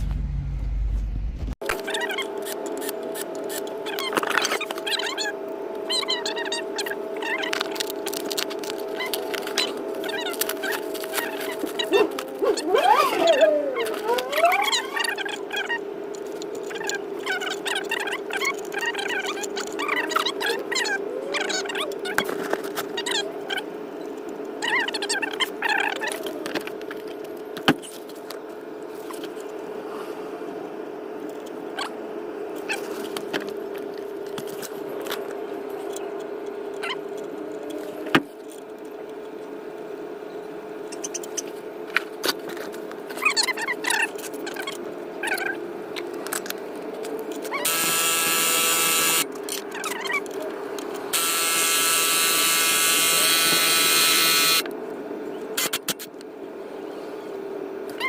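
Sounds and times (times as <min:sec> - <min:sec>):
steady background hum: 0:00.0 - 0:58.0
power tool motor whirring: 0:47.6 - 0:49.3, 0:51.1 - 0:54.7.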